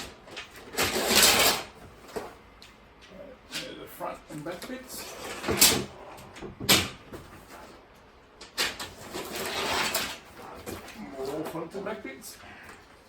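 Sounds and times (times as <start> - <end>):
scraping and rustling of cardboard: 0.0 - 2.4, 8.6 - 12.0.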